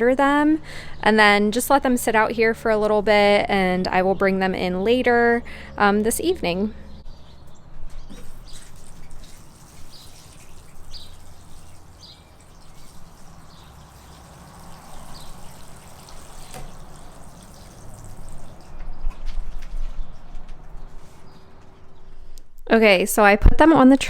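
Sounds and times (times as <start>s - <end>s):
water trickling into soil: 8.1s - 19.7s.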